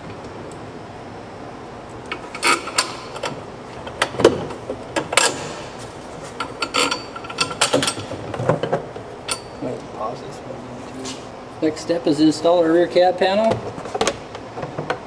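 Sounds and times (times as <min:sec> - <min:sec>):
hand tools clicking and knocking: 0:06.2 - 0:09.5.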